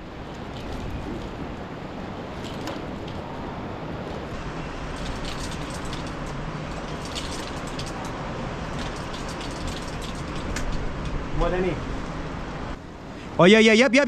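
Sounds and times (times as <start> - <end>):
wind noise: 0.0 - 13.2.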